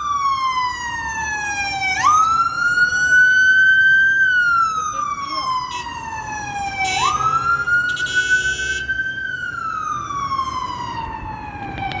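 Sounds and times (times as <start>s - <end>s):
ambulance siren wailing: 0.0s - 12.0s
horn blasts: 6.8s - 8.9s.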